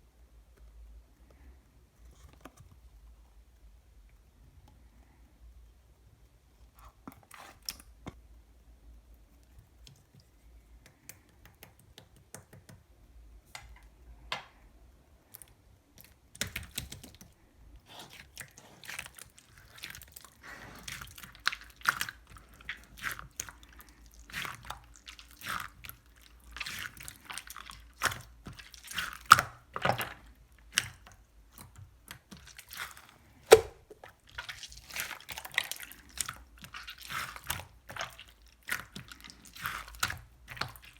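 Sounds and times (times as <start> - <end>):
slime squished by hand: 17.9 - 40.9.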